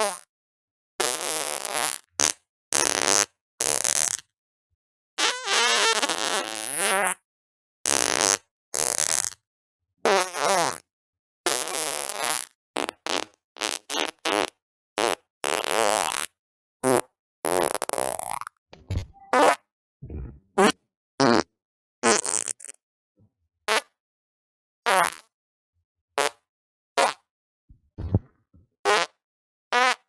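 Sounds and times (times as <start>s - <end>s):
fart sounds: 18.8s - 21.4s, 27.7s - 29.1s.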